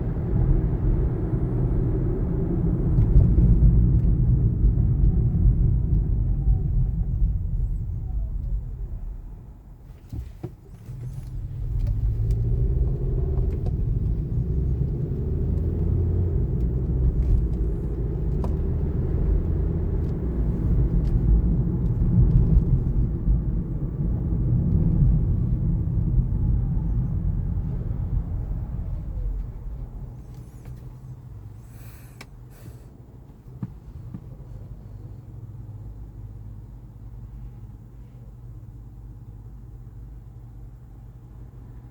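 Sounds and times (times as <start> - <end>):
car driving road rumble: 0.0 - 41.9.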